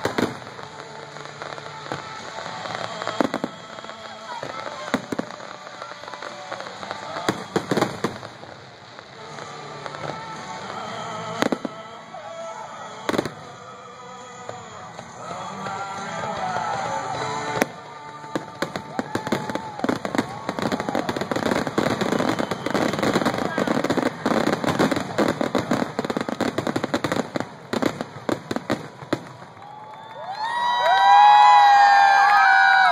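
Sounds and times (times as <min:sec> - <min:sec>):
fireworks exploding: 0:00.0 - 0:32.9
music playing: 0:00.0 - 0:32.9
crowd cheering and whooping: 0:15.3 - 0:17.6, 0:18.5 - 0:27.2, 0:29.1 - 0:32.9.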